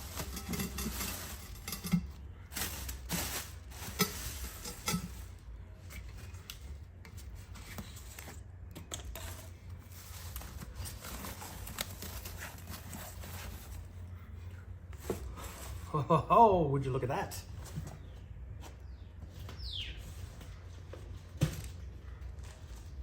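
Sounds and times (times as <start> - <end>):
plastic bag rustling: 0.0 - 8.5, 9.2 - 14.1.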